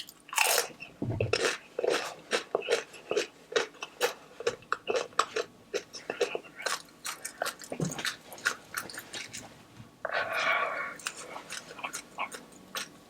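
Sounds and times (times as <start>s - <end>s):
chewing and crunching chip: 1.3s - 9.4s.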